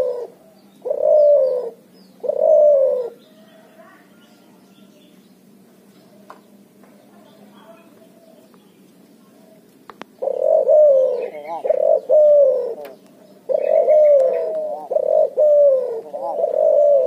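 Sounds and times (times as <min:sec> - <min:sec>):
dove cooing: 0:00.0 - 0:04.9, 0:09.3 - 0:17.0.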